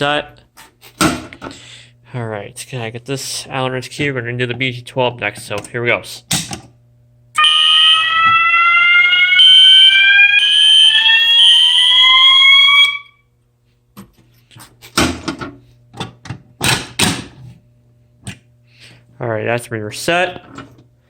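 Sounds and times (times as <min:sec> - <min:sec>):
fire alarm horns: 0:07.3 - 0:13.4.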